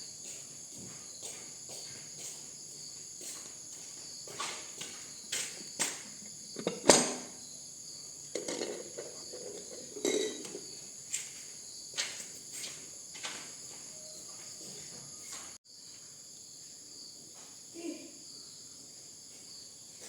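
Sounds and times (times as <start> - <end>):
insects chirring: 0.0 - 20.0
knocks and scrapes: 8.3 - 10.8.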